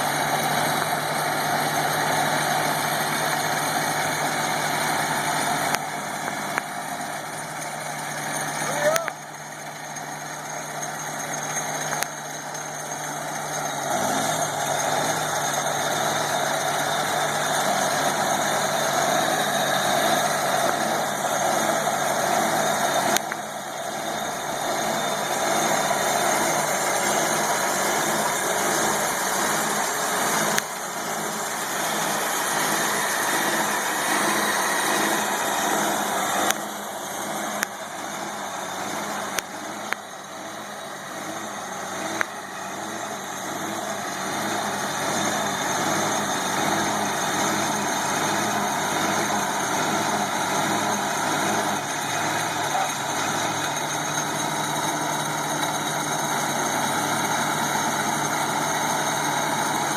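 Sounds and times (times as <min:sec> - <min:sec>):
drill engine running: 0:00.0 - 0:59.9.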